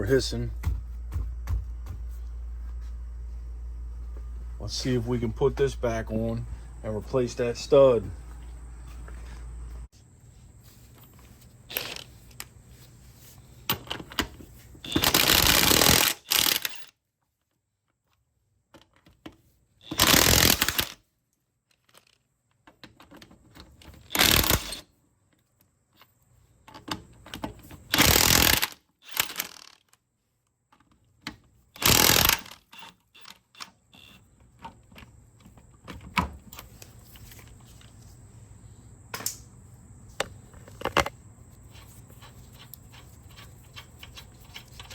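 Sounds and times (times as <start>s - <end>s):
impact wrench bursts: 11.7s - 12.1s, 14.8s - 16.9s, 19.8s - 21.0s, 24.1s - 24.8s, 27.9s - 29.8s, 31.8s - 34.2s
metal rattles of loose nuts: 11.7s - 12.3s, 13.7s - 16.9s, 22.8s - 24.8s, 26.6s - 29.9s, 31.3s - 36.9s, 41.8s - 44.9s.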